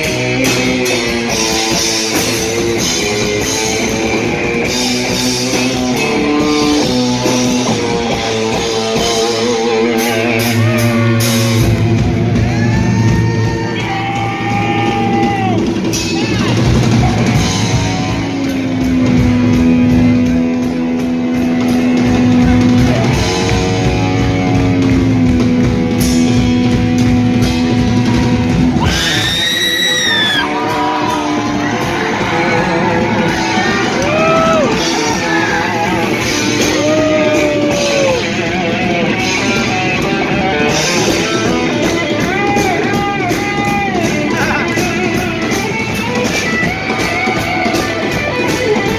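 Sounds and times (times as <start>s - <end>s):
bass guitar: 0.0s - 48.9s
distorted electric guitar: 0.0s - 48.9s
drums: 0.0s - 48.9s.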